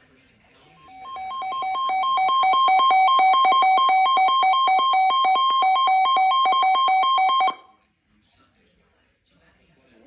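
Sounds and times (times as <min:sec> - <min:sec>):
two-pitch electronic alarm beeping: 0:00.8 - 0:07.7.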